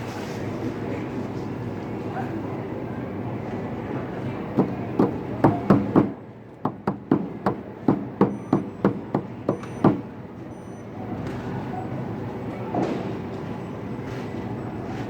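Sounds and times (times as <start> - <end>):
sharp knocks: 4.6 - 10.1.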